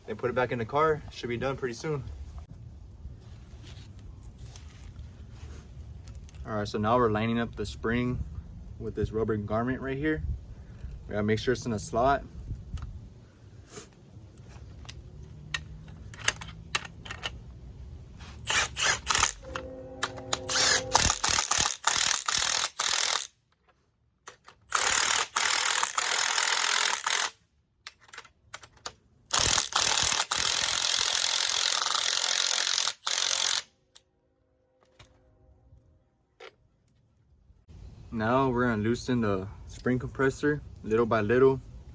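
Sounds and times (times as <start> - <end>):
metal parts clicking and knocking: 14.4 - 17.6, 20.1 - 34.0.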